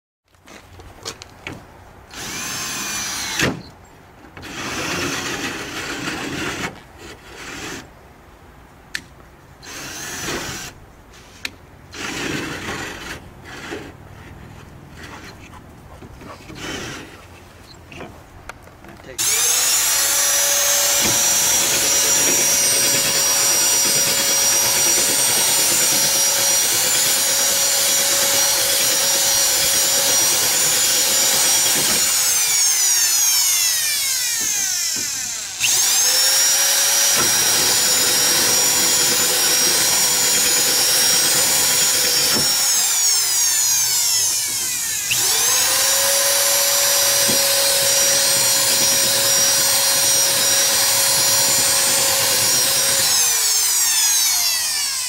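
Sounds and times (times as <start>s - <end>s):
electric drill running: 2.1s - 3.5s, 19.2s - 55.0s.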